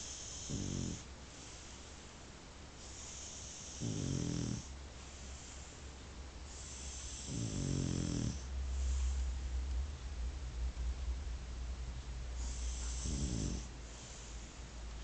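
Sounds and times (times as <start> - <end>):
person snoring: 0.0 - 1.1, 3.1 - 4.7, 6.6 - 8.4, 12.4 - 13.7
low rumble: 8.4 - 13.0.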